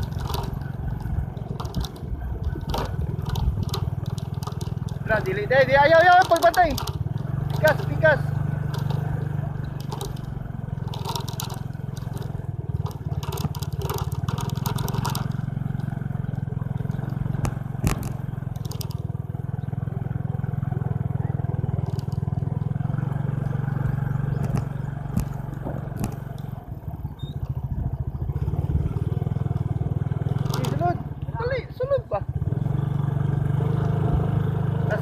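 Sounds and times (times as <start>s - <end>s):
bicycle rattles and clicks: 0.0s - 35.0s
bicycle rumbling over rough ground: 0.0s - 35.0s.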